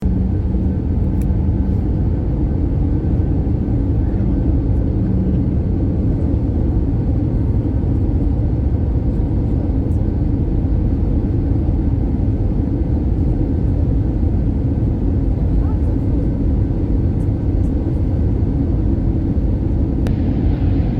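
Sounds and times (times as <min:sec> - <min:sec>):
airliner cabin engine rumble: 0:00.0 - 0:20.9.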